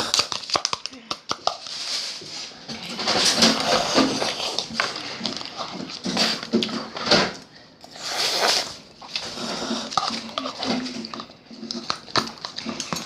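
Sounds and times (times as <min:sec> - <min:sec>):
slurping: 0:03.2 - 0:13.0
utensils clinking on bowl: 0:09.1 - 0:13.0.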